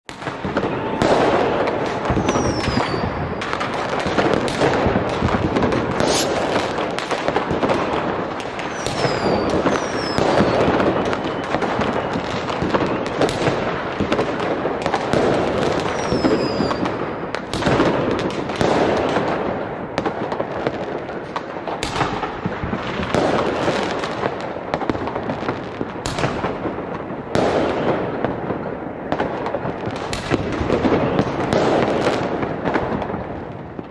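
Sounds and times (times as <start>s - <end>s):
fireworks bangs and crackling: 0.1s - 33.9s
falling firework whistles: 2.0s - 3.6s, 5.6s - 13.6s, 15.7s - 17.0s.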